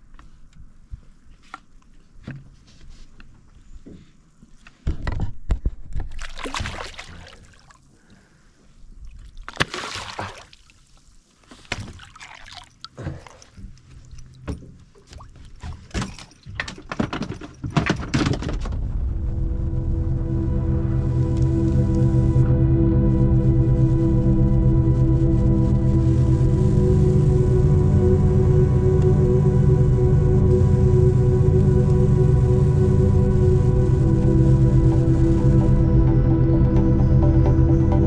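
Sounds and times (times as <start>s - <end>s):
knocks and thuds in boat: 14.4s - 18.8s.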